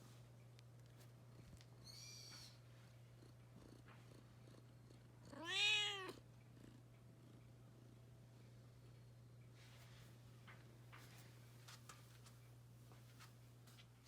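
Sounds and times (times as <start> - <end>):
kitten meowing: 5.4 - 6.2.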